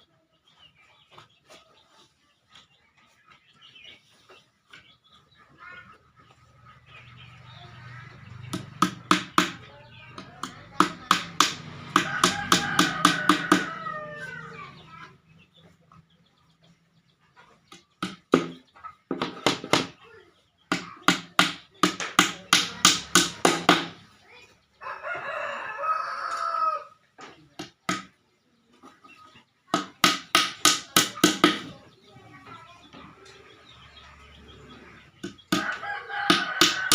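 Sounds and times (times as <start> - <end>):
rooster crowing: 12.0 - 14.6, 24.8 - 27.0, 35.6 - 36.9.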